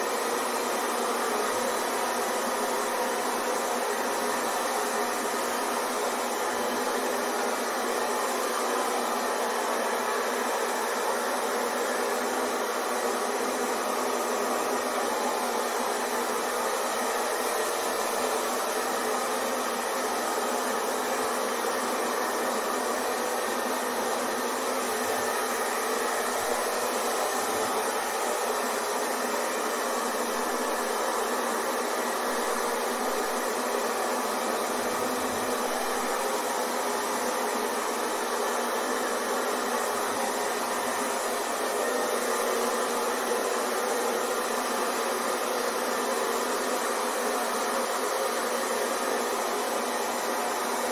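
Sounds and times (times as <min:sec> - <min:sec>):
hair dryer blowing: 0:00.0 - 0:50.9.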